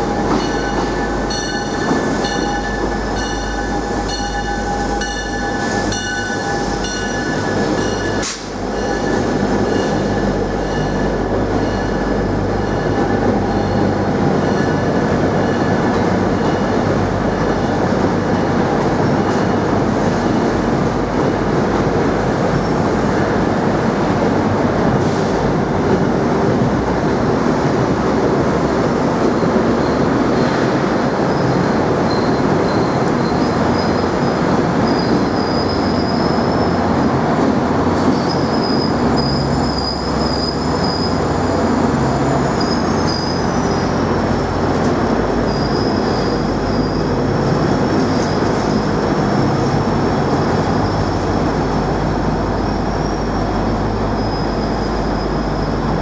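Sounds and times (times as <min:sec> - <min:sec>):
train wheels rumbling on rail: 0:00.0 - 0:56.0
high-pitched wheel squeal: 0:38.1 - 0:43.9, 0:54.1 - 0:55.9.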